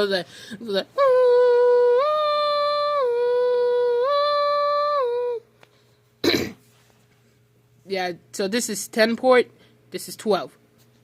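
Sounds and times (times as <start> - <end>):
person humming siren imitation: 0.6 - 5.4.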